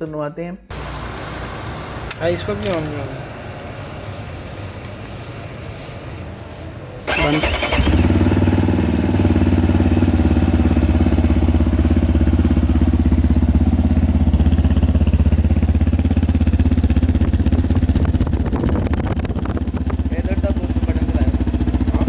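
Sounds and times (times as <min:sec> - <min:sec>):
motorcycle engine idling: 0:07.1 - 0:22.0.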